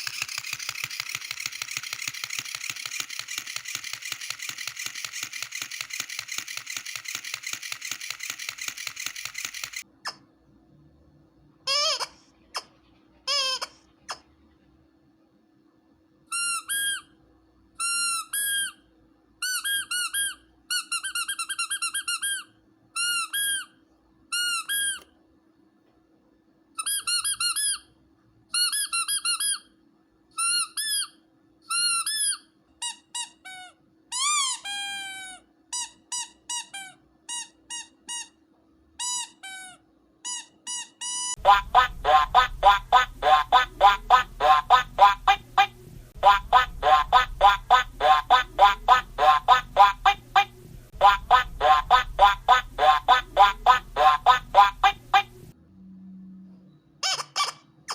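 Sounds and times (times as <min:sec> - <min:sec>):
squeaky dog toy squeaking: 0:11.6 - 0:14.3, 0:16.3 - 0:17.2, 0:17.8 - 0:25.1, 0:26.8 - 0:45.6, 0:57.0 - 0:57.9.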